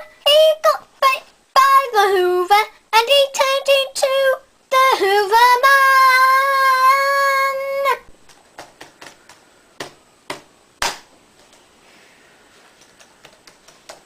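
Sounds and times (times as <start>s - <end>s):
child singing: 0.0s - 8.1s.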